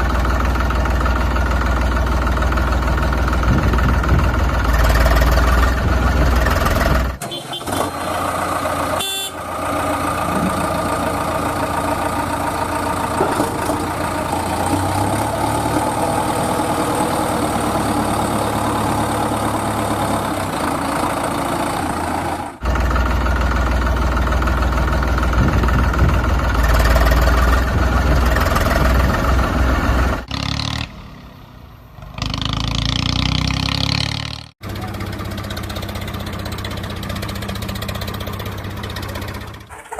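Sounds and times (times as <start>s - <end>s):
vehicle engine running: 0.0s - 39.7s.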